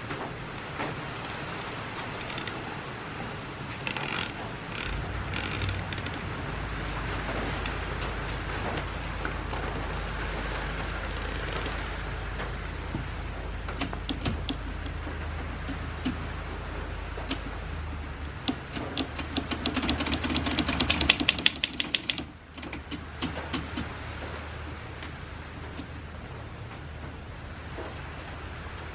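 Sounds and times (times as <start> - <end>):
typewriter keys striking: 13.8 - 16.3, 18.4 - 24.0.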